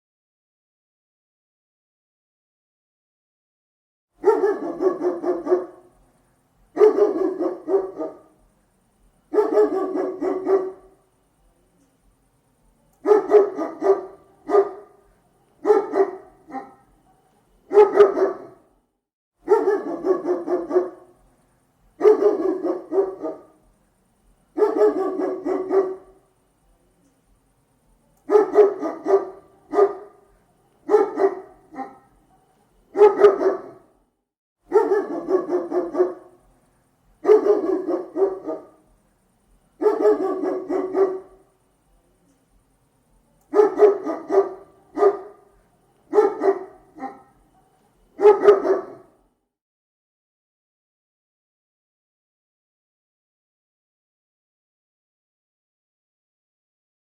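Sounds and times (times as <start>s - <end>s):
large dog barking: 4.2s - 6.0s, 6.7s - 8.4s, 9.3s - 11.0s, 13.0s - 18.8s, 19.4s - 21.2s, 22.0s - 23.7s, 24.5s - 26.3s, 28.2s - 34.0s, 34.7s - 36.5s, 37.2s - 39.0s, 39.8s - 41.5s, 43.4s - 49.3s.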